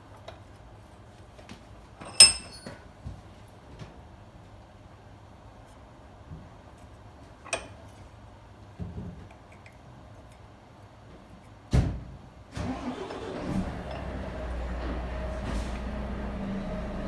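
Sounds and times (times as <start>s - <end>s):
metal knocks and clunks: 2.0s - 2.8s.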